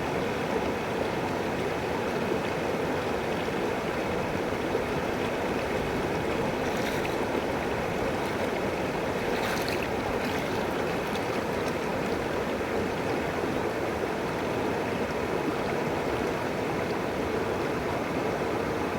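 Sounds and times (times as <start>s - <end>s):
river water flowing over rocks: 0.1s - 18.9s
faint splashes: 5.6s - 12.6s.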